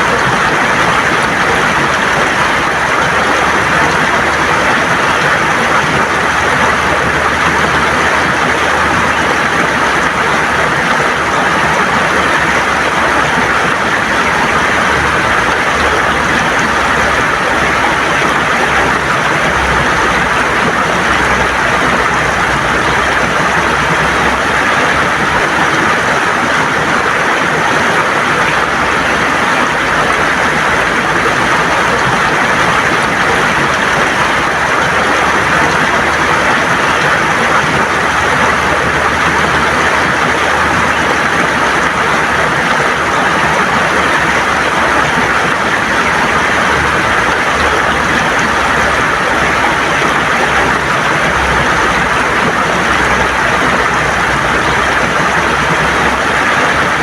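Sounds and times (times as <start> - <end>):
river water rushing over stones: 0.0 - 57.0.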